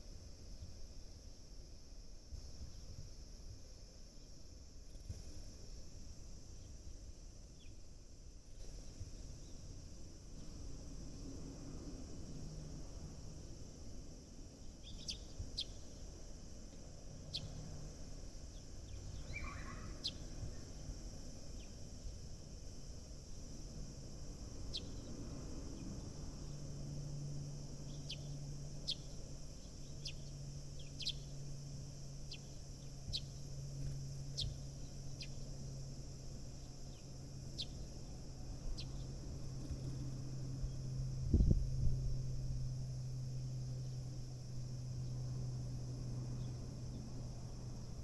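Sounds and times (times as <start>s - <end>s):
steady low hum: 0.0s - 48.0s
sparrows chirping: 14.6s - 16.2s, 16.8s - 22.3s, 24.4s - 26.8s, 27.8s - 35.9s, 36.5s - 41.0s.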